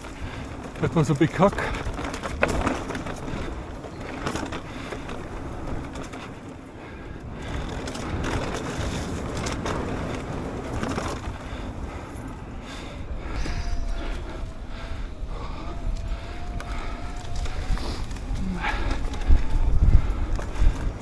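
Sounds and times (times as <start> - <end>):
bike rattle clicks and knocks: 0.0 - 6.5, 7.2 - 21.0
tyres over rough ground: 0.0 - 21.0
wind buffeting microphone: 0.0 - 21.0.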